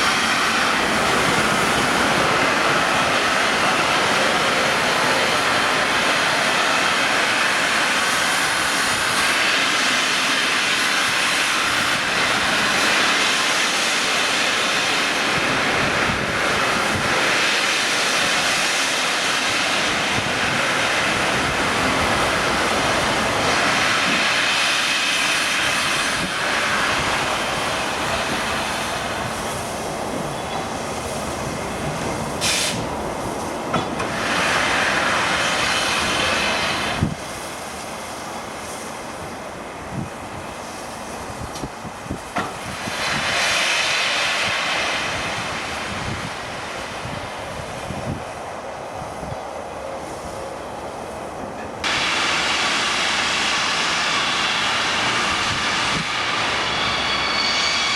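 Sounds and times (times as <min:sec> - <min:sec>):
train rushing on tracks: 0:00.0 - 0:57.9
brief sharp hisses: 0:32.4 - 0:32.9.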